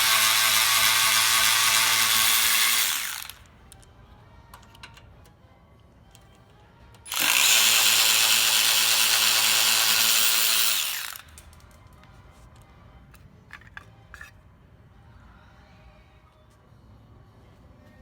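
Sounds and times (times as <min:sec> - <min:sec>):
power tool running: 0:00.0 - 0:03.4, 0:07.1 - 0:11.3
hand tools clicking: 0:07.1 - 0:11.8.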